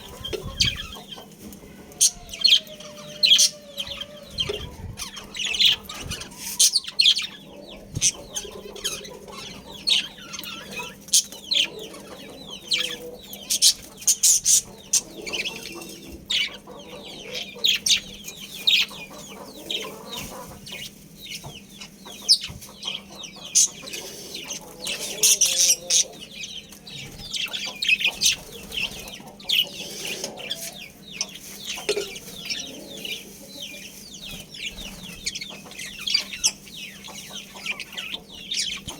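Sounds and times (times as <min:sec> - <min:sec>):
budgerigars chirping: 0:00.0 - 0:01.3, 0:01.9 - 0:38.9.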